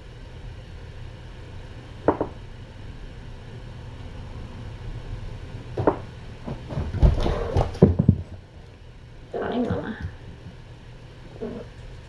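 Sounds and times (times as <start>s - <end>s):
short knocks: 2.0s - 2.4s, 5.8s - 8.7s
kittens running around: 5.2s - 12.0s.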